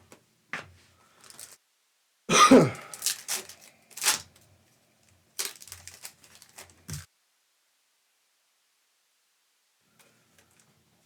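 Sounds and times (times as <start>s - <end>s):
foil card packs crinkling: 1.1s - 1.6s, 2.6s - 7.1s.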